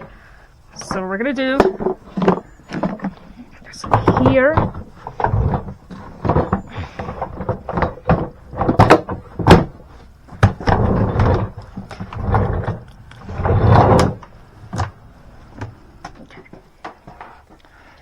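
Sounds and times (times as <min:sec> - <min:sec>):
scraping or rustling: 0:00.0 - 0:17.6
knocks and clunks of objects: 0:00.8 - 0:17.6.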